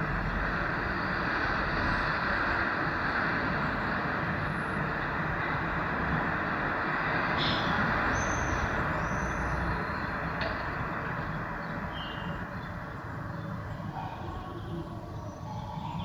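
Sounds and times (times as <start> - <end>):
bird chirps: 11.6 - 12.4.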